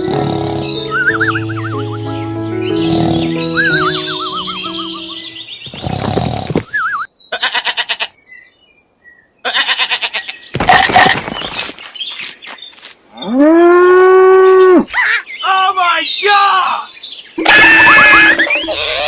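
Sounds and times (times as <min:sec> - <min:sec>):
cow mooing: 0:13.2 - 0:14.8.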